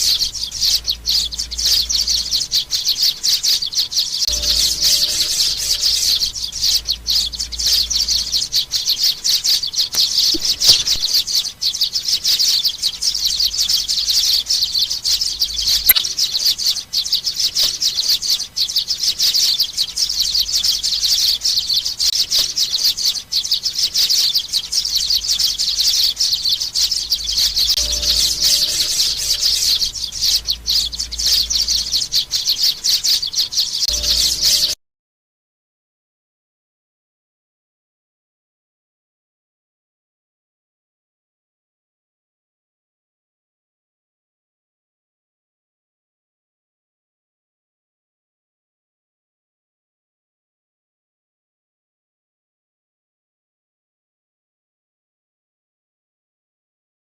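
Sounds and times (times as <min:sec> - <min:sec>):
young sparrows chirping: 0:00.0 - 0:34.8.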